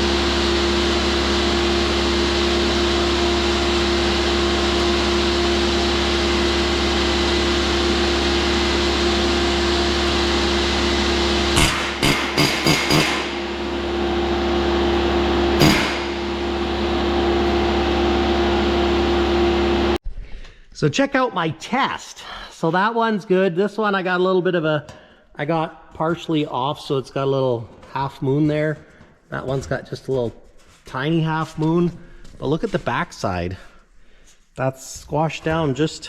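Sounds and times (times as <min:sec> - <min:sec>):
machine hum: 0:00.0 - 0:20.0
sharp metal hammer hits: 0:11.6 - 0:13.6, 0:15.6 - 0:16.3.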